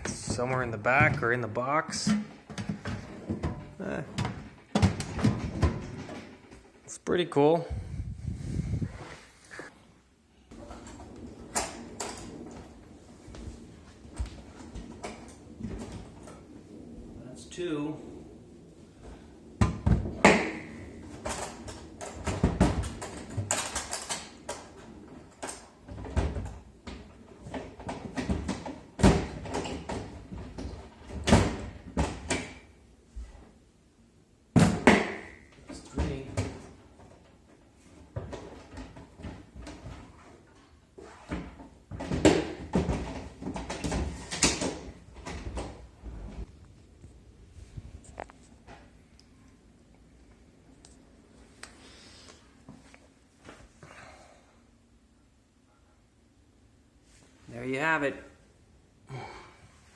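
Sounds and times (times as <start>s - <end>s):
plastic toolbox knocks and clunks: 0.0s - 6.3s, 34.5s - 36.6s, 41.3s - 45.8s.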